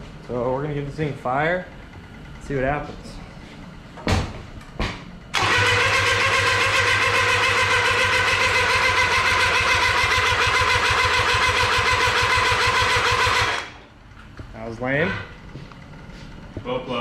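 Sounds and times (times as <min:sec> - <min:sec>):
starter motor cranking engine: 0:05.3 - 0:13.8.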